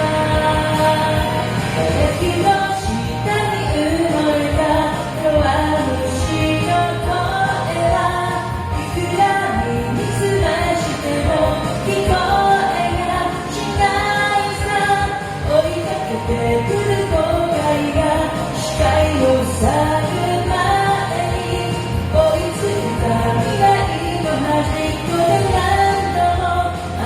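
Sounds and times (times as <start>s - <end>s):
pop song with singer: 0.0s - 27.0s.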